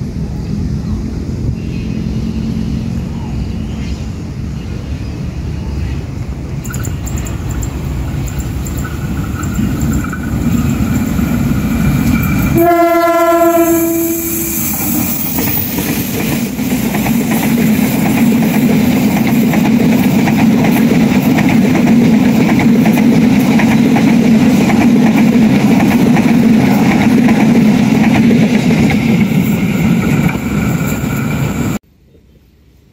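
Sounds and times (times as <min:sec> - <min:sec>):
train wheels clattering on rails: 0:06.6 - 0:12.8, 0:14.5 - 0:31.8
locomotive horn blast: 0:12.5 - 0:14.9.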